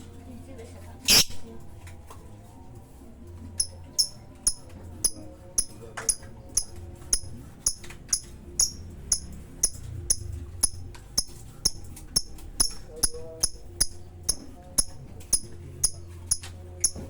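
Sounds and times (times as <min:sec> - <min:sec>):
lovebird chirping: 0:01.1 - 0:01.5.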